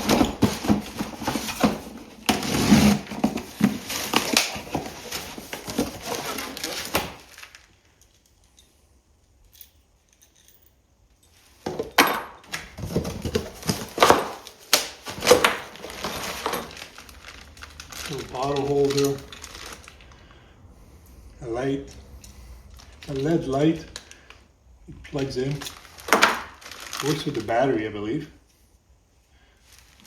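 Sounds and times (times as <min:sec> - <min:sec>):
packaging rustling: 0:00.0 - 0:08.1, 0:11.5 - 0:20.5, 0:22.7 - 0:24.4, 0:25.0 - 0:27.6
small parts clattering: 0:00.0 - 0:20.3, 0:25.0 - 0:27.6.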